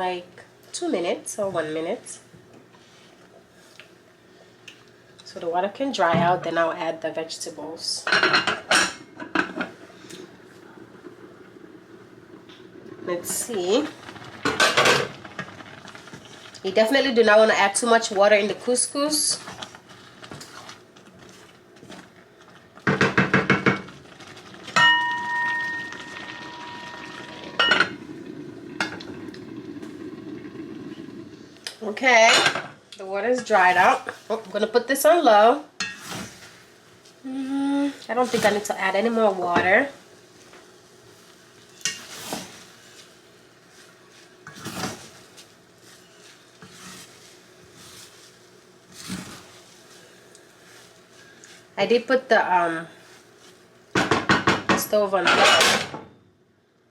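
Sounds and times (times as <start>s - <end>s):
metal cookware clattering: 24.7s - 28.0s, 54.0s - 56.0s
ringing metal clang: 24.8s - 26.8s.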